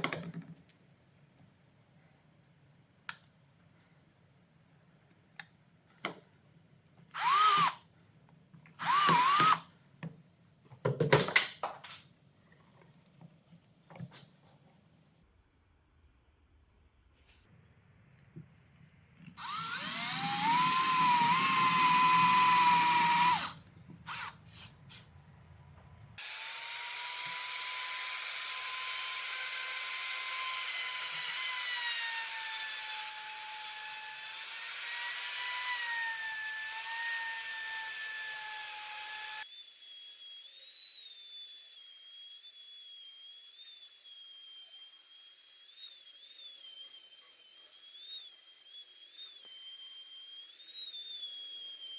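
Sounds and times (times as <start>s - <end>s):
power tool motor whine: 7.2s - 7.8s, 8.8s - 9.6s, 19.3s - 24.4s, 26.2s - 51.9s.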